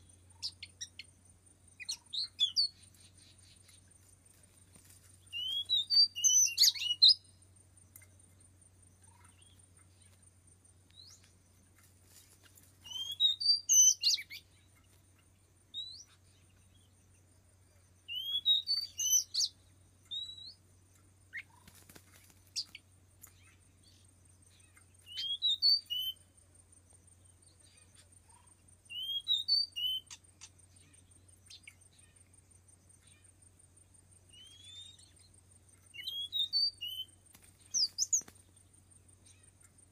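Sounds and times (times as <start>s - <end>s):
bird singing whistled notes: 1.8s - 3.8s, 5.2s - 7.4s, 12.8s - 14.7s, 15.7s - 17.0s, 18.0s - 20.6s, 23.4s - 26.3s, 28.8s - 32.2s, 34.3s - 38.4s.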